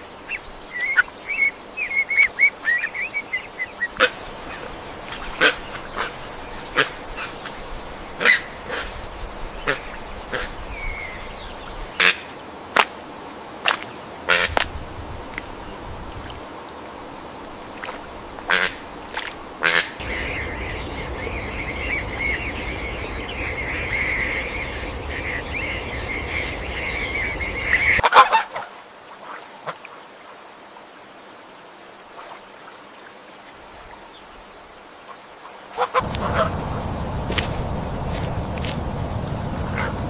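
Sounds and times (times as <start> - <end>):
birds chattering calls: 0.3 - 12.4, 19.6 - 28.0, 35.8 - 40.0
low rumble: 36.0 - 40.0.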